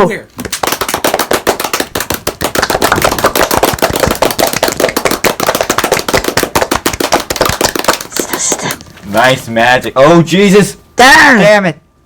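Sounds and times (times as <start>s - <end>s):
rapid sharp bangs: 0.4s - 8.6s.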